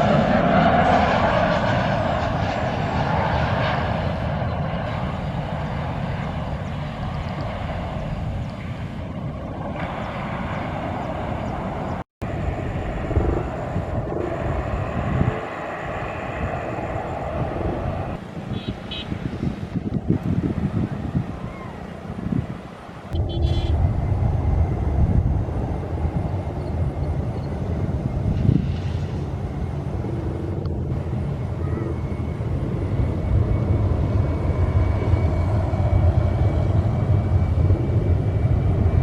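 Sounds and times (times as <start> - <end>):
jet airliner engines roaring: 0.0 - 39.0
wind noise: 0.0 - 39.0.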